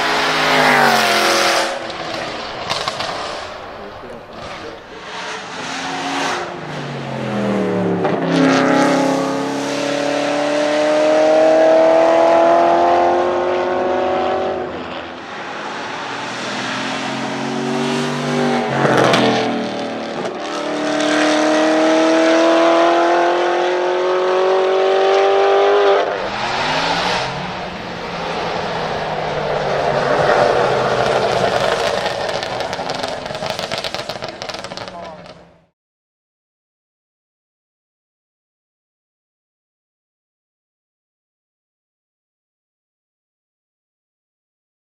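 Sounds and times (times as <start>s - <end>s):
racing engine accelerating hard: 0.0s - 35.4s
road noise: 0.0s - 35.7s
sharp crack: 1.7s - 4.9s, 30.0s - 35.5s.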